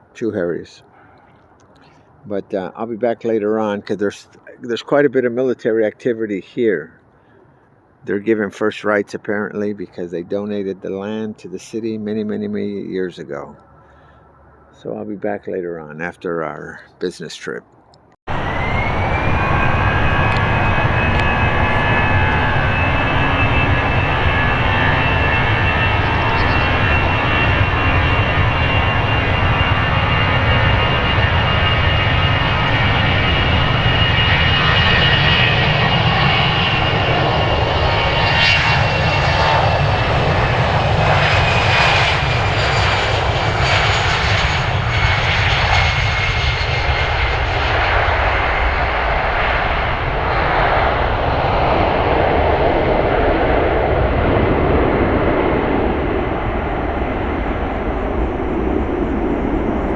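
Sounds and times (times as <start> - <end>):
airplane engines rumbling: 0.8 - 2.2, 18.3 - 59.9
high whine: 18.3 - 38.8, 49.7 - 59.9.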